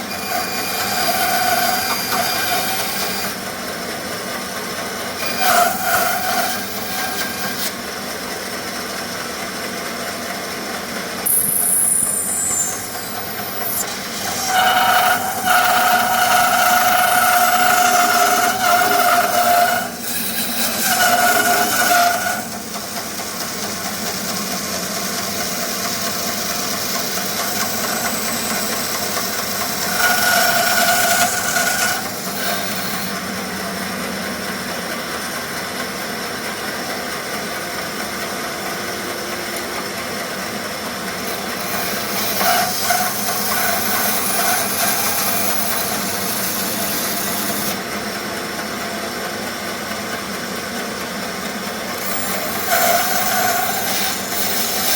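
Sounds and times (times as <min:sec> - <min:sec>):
band saw cutting wood: 0:00.0 - 0:09.3, 0:11.2 - 0:35.6, 0:38.8 - 0:47.9, 0:51.7 - 0:54.9.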